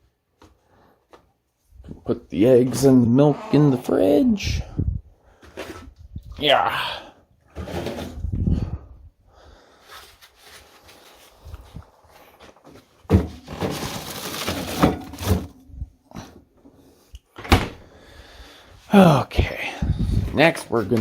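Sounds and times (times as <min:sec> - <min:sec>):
kitchen items clattering: 0:07.6 - 0:08.3, 0:13.1 - 0:15.6.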